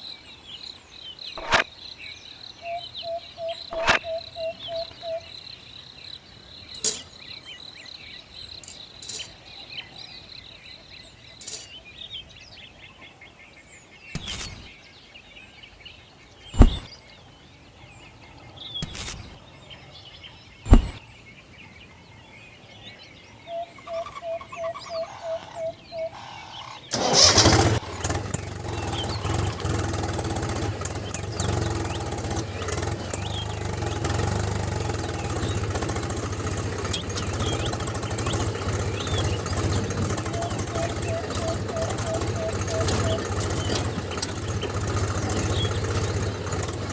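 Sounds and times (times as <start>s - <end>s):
birds chirping: 0.0s - 13.0s, 13.8s - 46.9s
even pulses: 1.4s - 1.6s, 3.7s - 4.0s, 16.6s - 16.9s, 20.7s - 21.0s
small engine running: 1.4s - 1.6s, 3.7s - 4.0s, 14.2s - 14.7s, 16.6s - 16.9s, 20.7s - 21.0s, 26.9s - 46.9s
sharp knocks: 16.6s - 16.9s, 20.7s - 21.0s.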